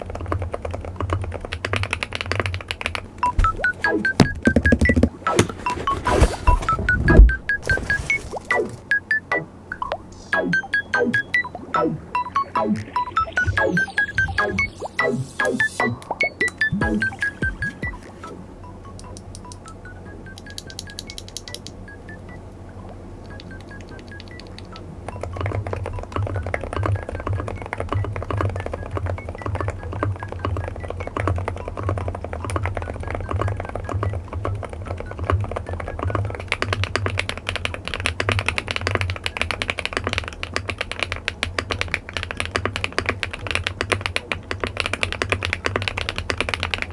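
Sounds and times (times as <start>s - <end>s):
mechanical keyboard typing: 0.0s - 7.8s, 20.3s - 21.8s, 23.2s - 46.9s
background music: 8.6s - 19.2s.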